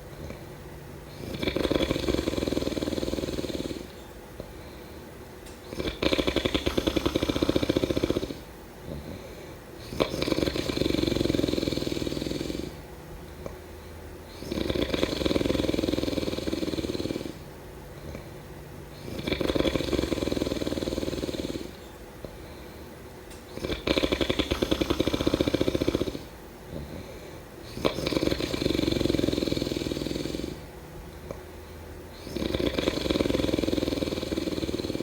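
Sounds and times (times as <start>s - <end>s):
person snoring: 1.1s - 4.0s, 5.6s - 12.8s, 14.3s - 18.3s, 18.9s - 21.9s, 23.5s - 31.4s, 32.1s - 35.0s.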